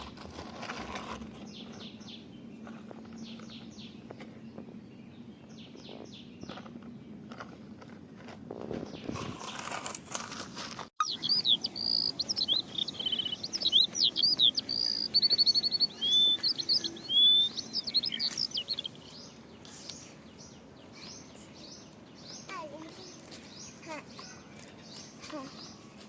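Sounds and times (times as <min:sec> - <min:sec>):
songbird singing: 0:00.0 - 0:09.9, 0:11.0 - 0:26.0.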